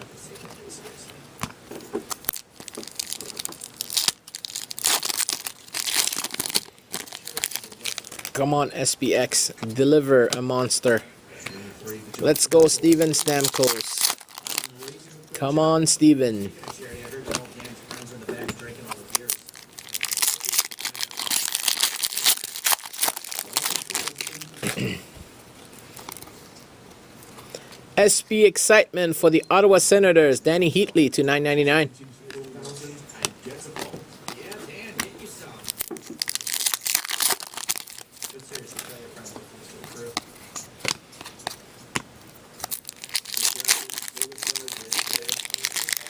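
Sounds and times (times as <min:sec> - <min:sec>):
wrapper crinkling and tearing: 0:02.1 - 0:08.4, 0:12.3 - 0:15.0, 0:18.8 - 0:24.7, 0:35.6 - 0:39.0, 0:42.6 - 0:46.0.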